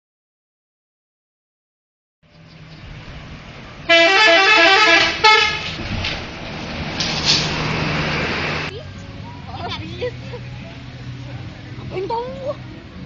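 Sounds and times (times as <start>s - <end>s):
bus engine: 2.2s - 13.0s
road noise: 2.2s - 13.0s
musical air horn melody: 3.9s - 5.8s.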